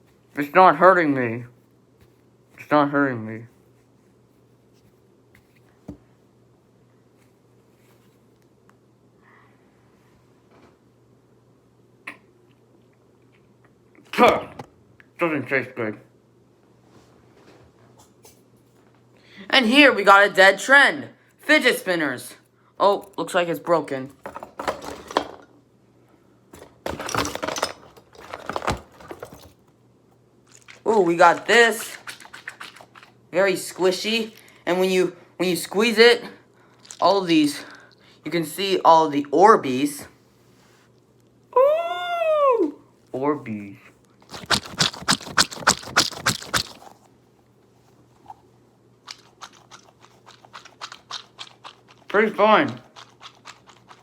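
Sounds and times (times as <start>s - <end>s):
fidget toys clicking and rattling: 36.8s - 37.3s, 44.2s - 47.0s, 49.0s - 54.0s
squishy stress ball squeezed: 44.2s - 47.0s.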